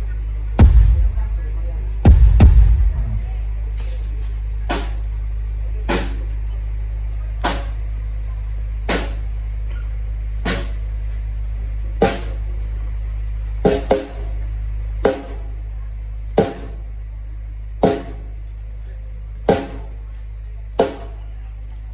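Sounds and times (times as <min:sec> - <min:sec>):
deep bass hum: 0:00.0 - 0:03.7
sharp bass hits: 0:00.6 - 0:01.4, 0:02.0 - 0:03.4.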